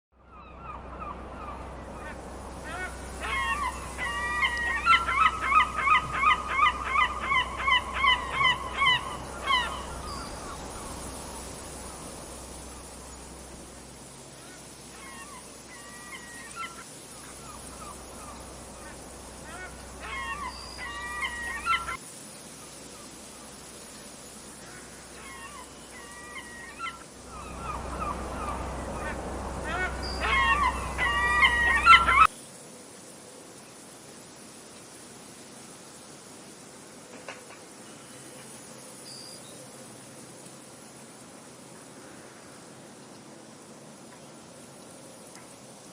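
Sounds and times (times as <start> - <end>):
steady wind: 0.1 - 45.9
seagulls calling: 0.2 - 13.1, 14.4 - 22.0, 24.6 - 32.3.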